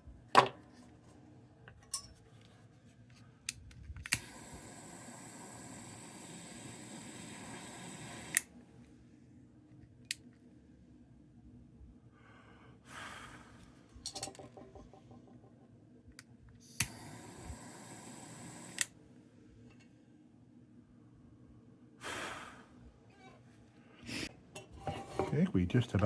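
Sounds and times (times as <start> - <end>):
torch valve click: 3.5 - 8.5, 16.6 - 19.0
gas torch hissing: 4.1 - 8.5, 16.6 - 18.9, 22.0 - 22.7
puff of gas: 12.2 - 13.6, 22.0 - 22.9, 24.0 - 25.3.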